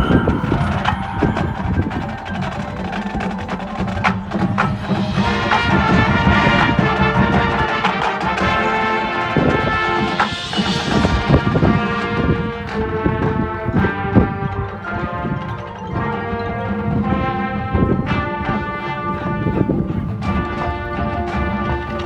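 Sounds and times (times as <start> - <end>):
woodblock percussion clicks: 0.0 - 17.1
bell tones: 0.0 - 17.7
marching band playing: 0.0 - 22.0.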